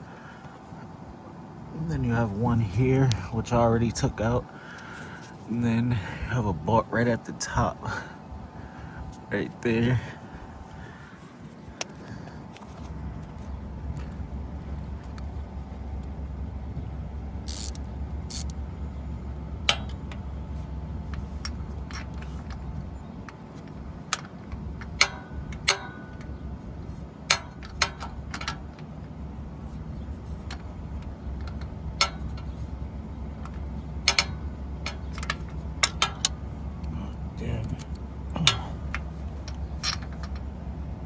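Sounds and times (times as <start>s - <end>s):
steady low rumble: 0.0s - 41.0s
hand tools clinking against metal: 37.6s - 40.4s.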